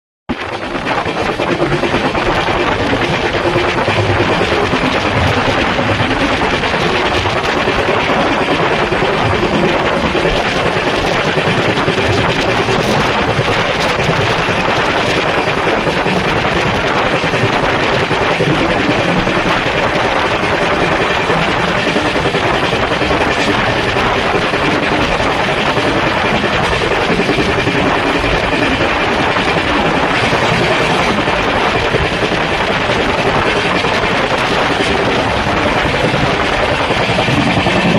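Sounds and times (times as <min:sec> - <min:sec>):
moving train rushing: 0:00.3 - 0:37.9.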